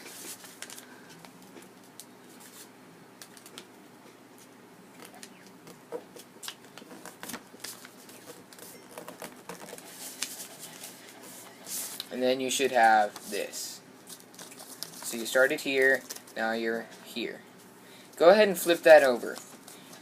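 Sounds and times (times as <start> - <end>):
paper rustling and crinkling: 0.0 - 3.7, 6.1 - 12.1, 14.0 - 16.4.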